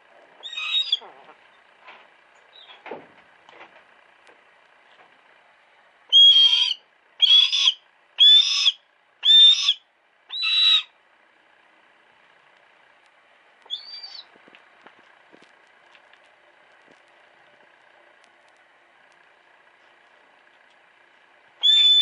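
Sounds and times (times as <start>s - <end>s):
hawk calling: 0.4s - 1.4s, 6.1s - 11.0s, 13.7s - 14.3s, 21.6s - 22.0s.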